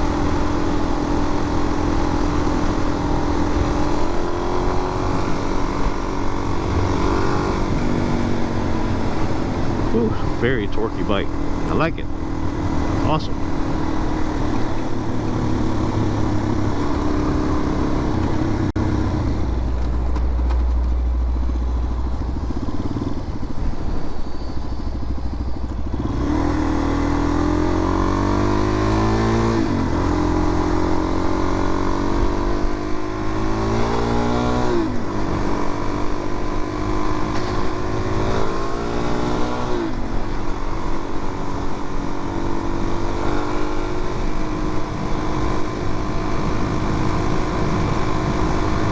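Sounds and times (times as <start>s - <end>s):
motorcycle engine accelerating: 0.0s - 48.9s.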